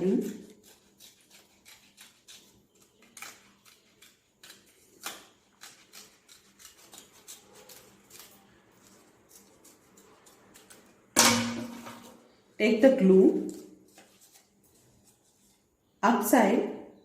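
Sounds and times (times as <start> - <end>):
scissors snipping paper: 0.0 - 11.0.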